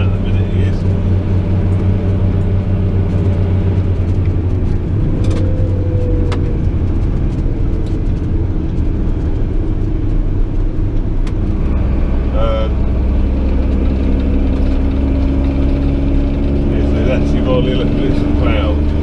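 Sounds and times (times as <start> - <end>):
tractor diesel engine droning: 0.0 - 19.0.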